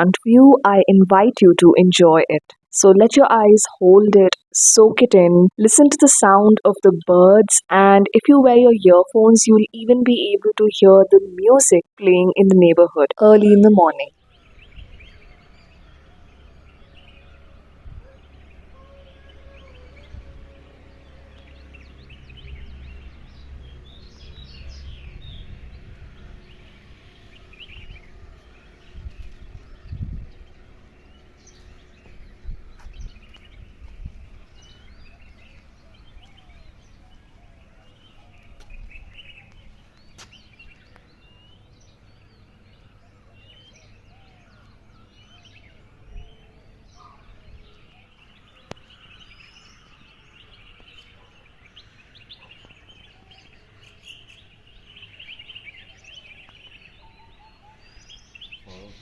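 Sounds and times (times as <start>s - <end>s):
birds chirping and singing: 26.4s - 59.0s.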